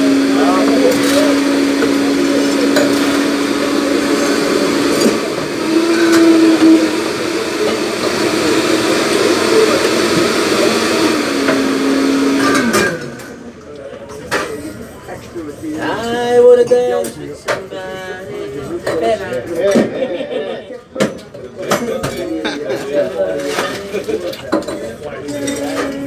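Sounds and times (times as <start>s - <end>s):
blender motor running: 0.0s - 13.5s.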